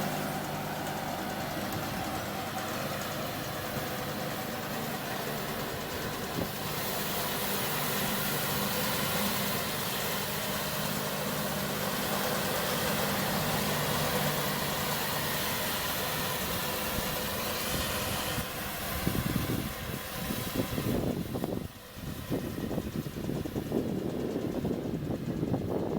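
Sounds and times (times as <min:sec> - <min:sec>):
tractor running: 0:00.0 - 0:25.9
wind buffeting microphone: 0:16.5 - 0:25.9.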